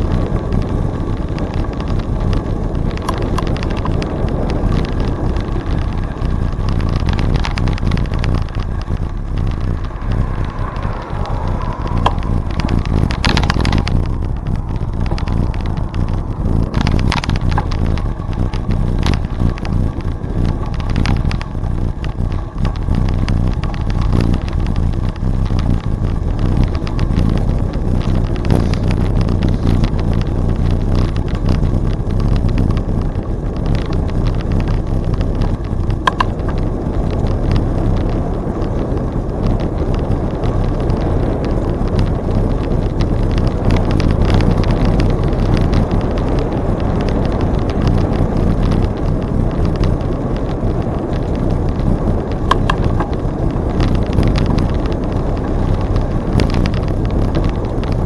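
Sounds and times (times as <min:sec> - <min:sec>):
bicycle tyres rumbling on trail: 0:00.0 - 0:58.0
wind buffeting microphone: 0:00.0 - 0:58.0
clicks and rattles: 0:02.8 - 0:33.0, 0:33.6 - 0:36.6, 0:51.1 - 0:55.2.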